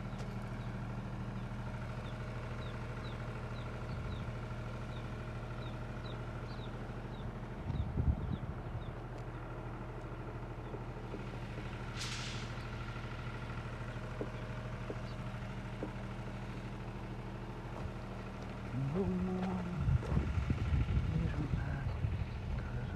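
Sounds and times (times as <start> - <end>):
engine idling: 0.0 - 22.9
hissing air burst: 11.9 - 12.7.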